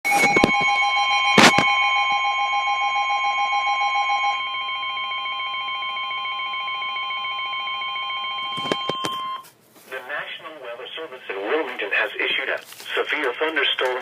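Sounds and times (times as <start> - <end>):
two-tone alarm: 0.0 - 9.5.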